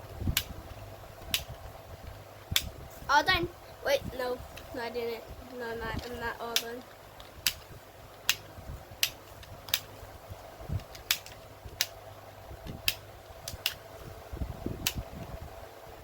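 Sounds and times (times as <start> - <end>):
faint steady hum: 0.0 - 16.0
puzzle toy sharp clicks: 8.2 - 9.9.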